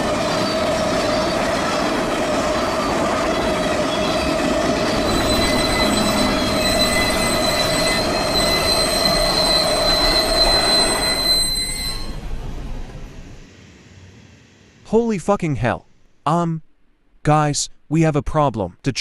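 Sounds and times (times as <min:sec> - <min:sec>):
train wheels squealing: 0:00.0 - 0:12.2
rumble of rolling train cars: 0:00.0 - 0:16.2.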